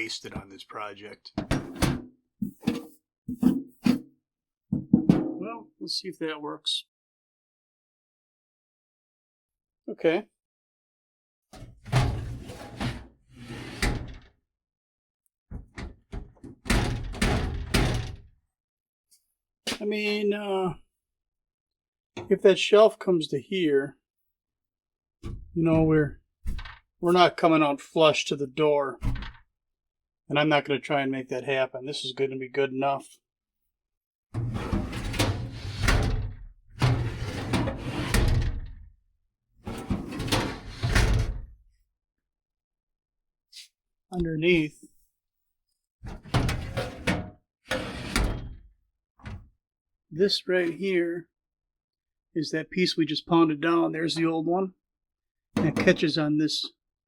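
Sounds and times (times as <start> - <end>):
metal drawer sliding and banging: 1.5 - 4.0, 11.6 - 14.3, 16.7 - 18.2, 34.4 - 38.7, 39.7 - 41.4, 46.1 - 48.6
metal knocks and taps: 4.7 - 5.4.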